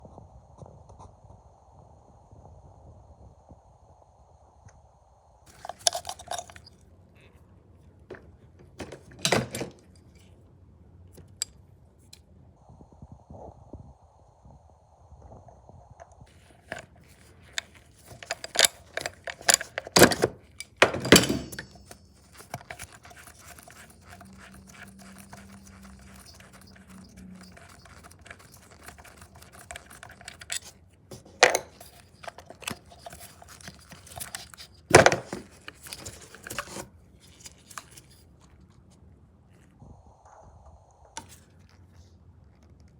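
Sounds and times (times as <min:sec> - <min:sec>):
metal tools clicking and scraping: 0:05.5 - 0:06.8, 0:16.6 - 0:38.2.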